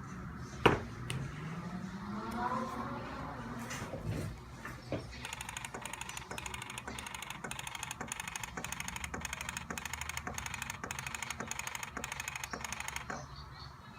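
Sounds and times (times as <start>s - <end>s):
camera lens mechanical ticking: 5.2s - 13.2s.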